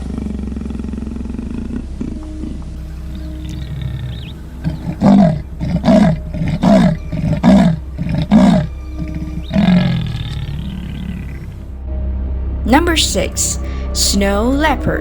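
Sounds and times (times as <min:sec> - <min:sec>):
leopard roaring: 0:00.0 - 0:11.8.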